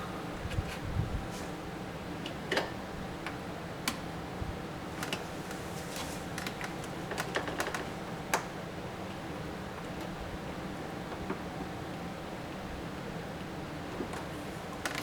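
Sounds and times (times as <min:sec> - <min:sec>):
steady low hum: 0:00.0 - 0:02.2.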